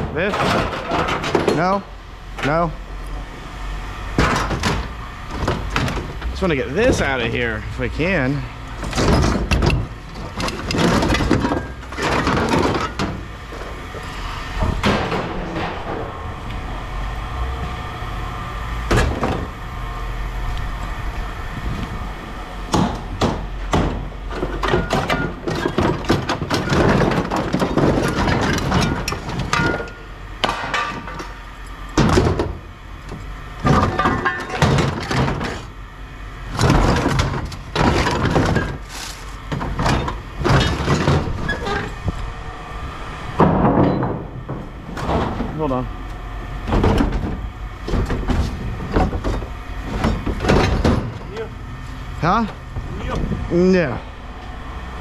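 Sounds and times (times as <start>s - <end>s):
scrap metal clanking and scraping: 0.0s - 2.7s, 4.1s - 16.9s, 22.7s - 35.8s, 36.5s - 42.2s, 43.2s - 54.1s.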